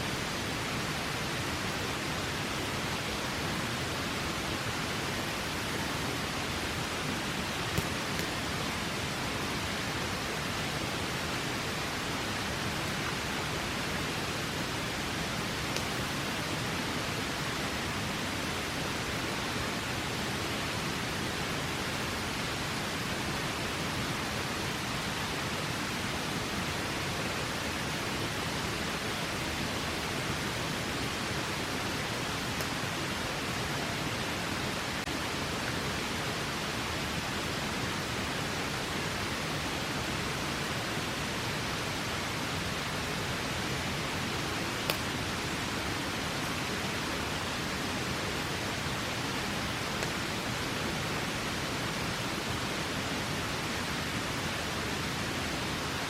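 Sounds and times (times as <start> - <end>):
river rushing: 0.0 - 56.0
campfire pops: 44.8 - 45.1.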